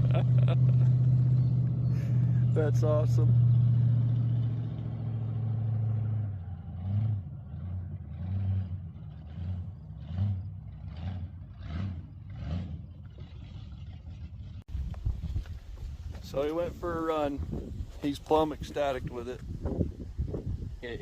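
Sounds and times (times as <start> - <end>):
car engine revving: 0.0 - 14.6.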